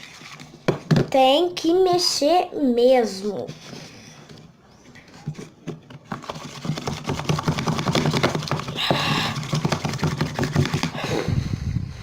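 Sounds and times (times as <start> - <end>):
slime stirred in a bowl: 6.0 - 11.0.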